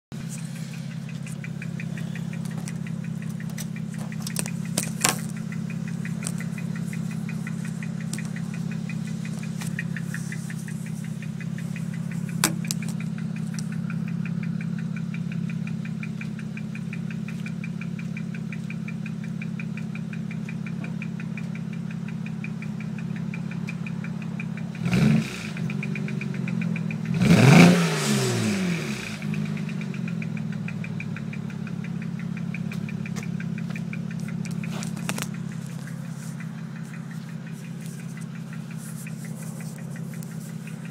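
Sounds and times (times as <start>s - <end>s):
car engine idling with misfire: 0.1s - 40.9s
engine revving: 0.1s - 40.9s
fast steady ticking: 0.1s - 40.9s.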